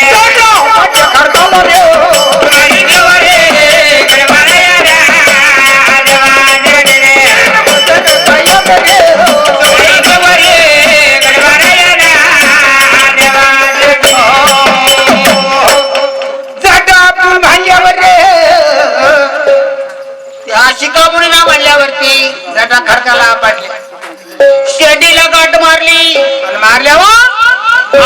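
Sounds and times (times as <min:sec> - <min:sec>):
quick percussion strikes: 0:00.0 - 0:18.4
person singing ornamented melody: 0:00.0 - 0:21.1.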